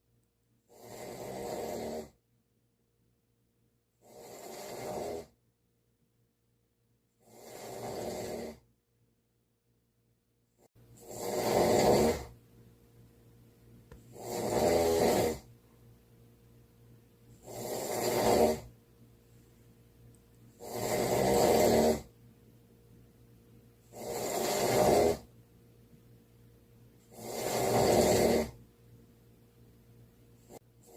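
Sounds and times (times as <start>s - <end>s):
snoring: 0.7s - 2.2s, 4.0s - 5.4s, 7.2s - 8.7s, 10.6s - 12.4s, 14.0s - 15.5s, 17.3s - 18.7s, 20.6s - 22.1s, 23.8s - 25.3s, 27.0s - 28.6s, 30.4s - 30.9s.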